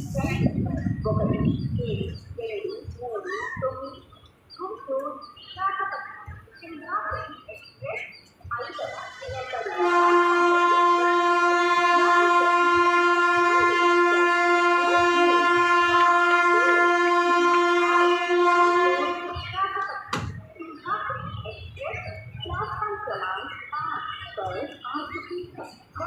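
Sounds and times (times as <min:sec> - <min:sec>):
locomotive horn blast: 0:09.1 - 0:19.6.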